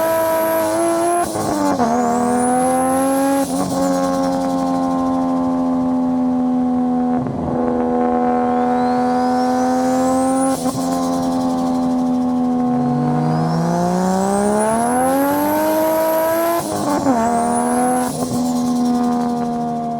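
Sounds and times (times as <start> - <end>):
race car engine running: 0.0 - 19.9
turbo whistle: 8.5 - 19.9.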